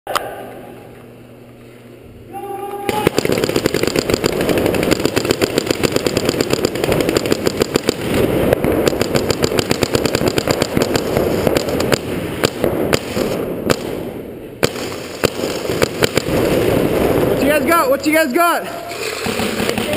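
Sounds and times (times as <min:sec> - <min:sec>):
paintball markers firing rapidly: 0:02.9 - 0:14.0, 0:14.6 - 0:16.7, 0:18.9 - 0:19.9.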